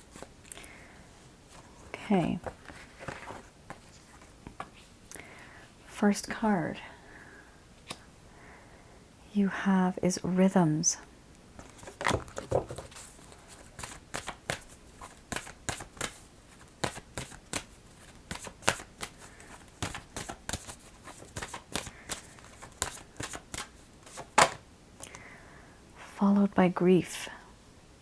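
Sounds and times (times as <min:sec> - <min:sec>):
cards being shuffled: 0:01.5 - 0:04.9, 0:11.6 - 0:24.6.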